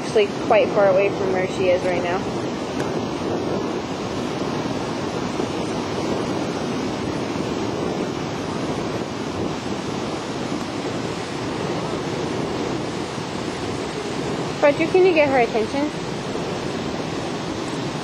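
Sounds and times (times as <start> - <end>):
waterfall rushing: 0.0 - 18.0
wind buffeting microphone: 0.0 - 18.0.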